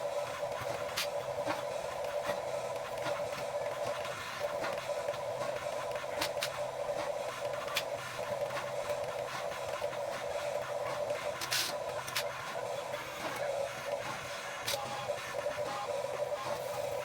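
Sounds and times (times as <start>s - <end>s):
electric motors whirring: 7.4s - 17.0s.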